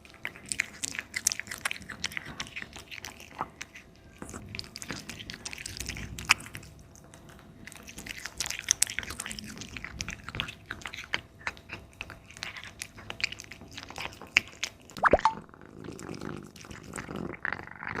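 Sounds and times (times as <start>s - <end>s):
cat chewing meat: 0.0s - 18.0s.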